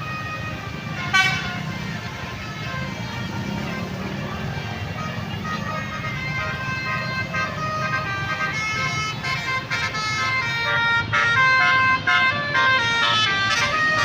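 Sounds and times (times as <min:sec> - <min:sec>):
bus engine rumble: 0:00.0 - 0:14.0
air horns playing a tune: 0:00.8 - 0:02.1, 0:05.0 - 0:14.0.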